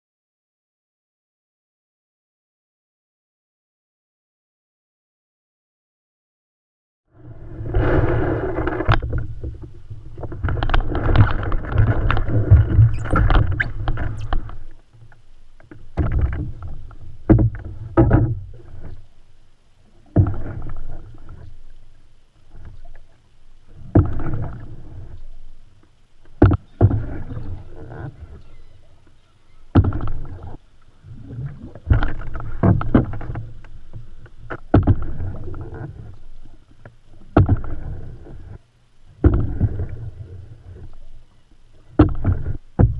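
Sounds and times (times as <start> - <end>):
canoe paddle splashing in water: 7.6 - 19.1, 19.8 - 25.6, 26.2 - 38.6, 39.2 - 42.9.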